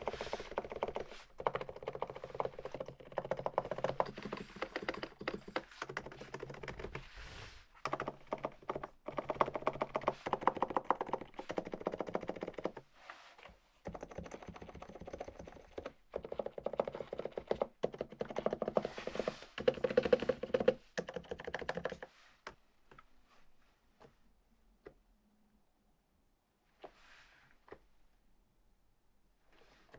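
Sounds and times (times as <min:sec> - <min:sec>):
keyboard typing: 0:00.0 - 0:07.1, 0:07.8 - 0:12.8, 0:13.8 - 0:22.1.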